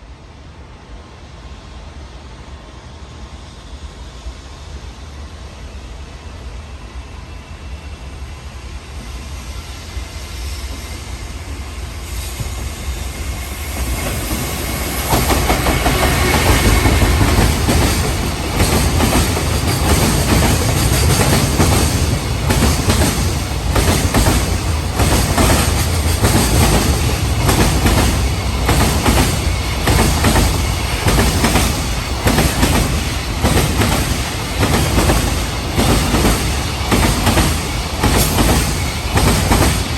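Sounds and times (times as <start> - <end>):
freight train passing: 0.0 - 39.9.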